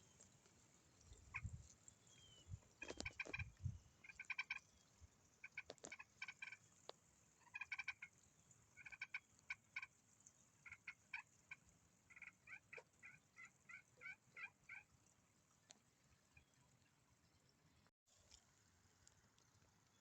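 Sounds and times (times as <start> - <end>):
turkey yelping and clucking: 2.8 - 4.6, 7.4 - 8.1, 10.6 - 14.9.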